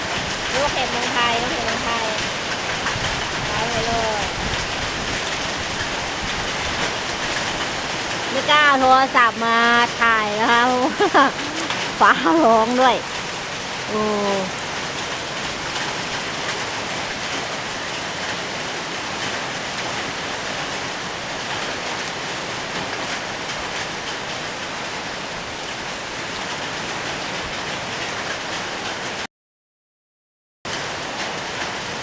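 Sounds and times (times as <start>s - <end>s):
heavy rain and hail: 0.0s - 29.3s, 30.7s - 32.0s.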